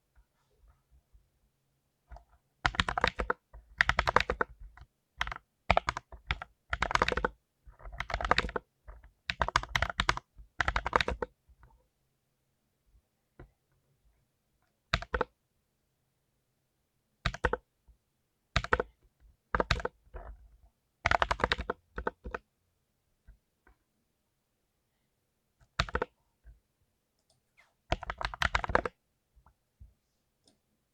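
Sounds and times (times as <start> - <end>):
mechanical keyboard clicking: 2.7 - 4.5, 5.2 - 8.6, 9.3 - 11.3, 17.3 - 17.6, 19.6 - 20.0, 21.1 - 22.4, 25.7 - 26.1, 27.9 - 28.9.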